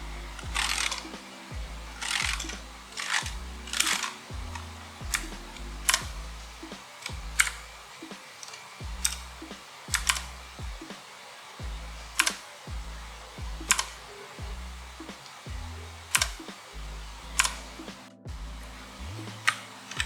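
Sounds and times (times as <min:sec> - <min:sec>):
background music with bass line: 0:00.0 - 0:07.9, 0:08.8 - 0:10.9, 0:11.6 - 0:20.0
mechanical keyboard keys clicking: 0:00.4 - 0:06.2, 0:08.4 - 0:10.8, 0:12.2 - 0:12.5, 0:13.6 - 0:14.1, 0:16.0 - 0:16.5, 0:17.3 - 0:18.2.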